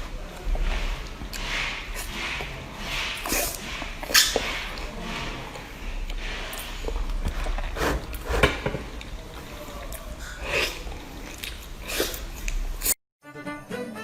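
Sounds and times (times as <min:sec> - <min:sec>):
person chewing food: 0:00.1 - 0:13.0
wet mouth sounds: 0:00.8 - 0:05.0, 0:08.9 - 0:13.0.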